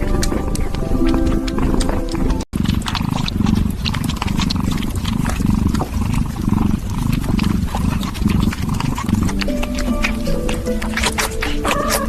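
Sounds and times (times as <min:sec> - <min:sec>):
low rough cat rumbling: 0:00.0 - 0:12.0
music: 0:09.3 - 0:12.0.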